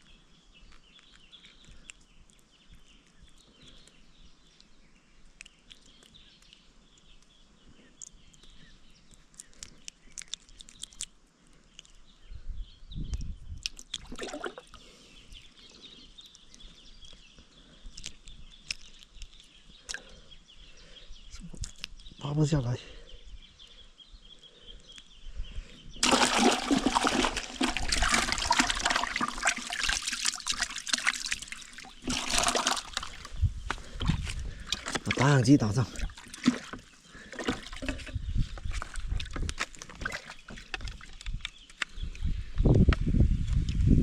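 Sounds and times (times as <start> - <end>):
faint bird chirping: 0.0 - 26.0.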